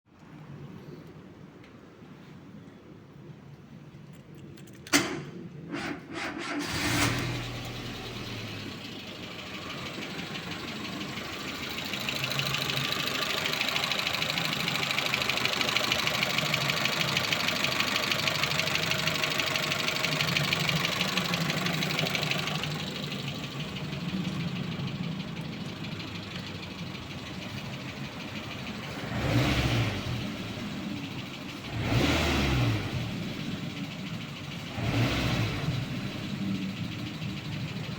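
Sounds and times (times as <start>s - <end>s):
car engine starting and running: 4.8s - 37.9s
engine revving: 5.7s - 24.4s, 28.7s - 37.9s
fast even engine ticking: 6.6s - 37.9s.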